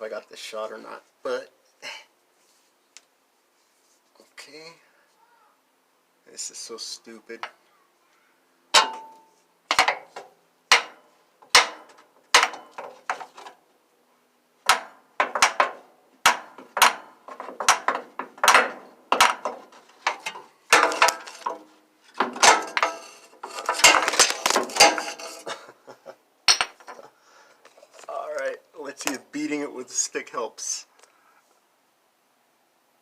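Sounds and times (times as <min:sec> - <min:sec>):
hammer clanking on metal: 0:08.8 - 0:12.9, 0:14.7 - 0:25.4.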